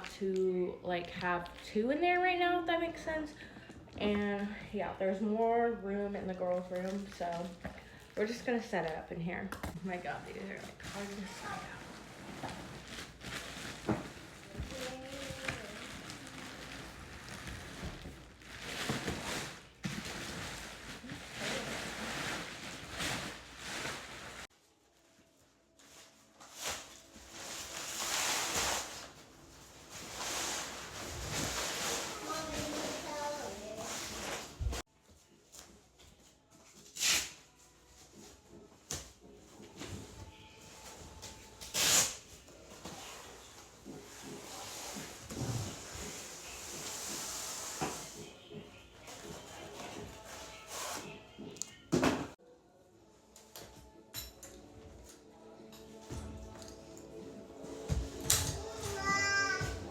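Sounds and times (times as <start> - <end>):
rustling of crib being set up: 9.9 - 24.5, 25.8 - 52.4, 53.5 - 59.9.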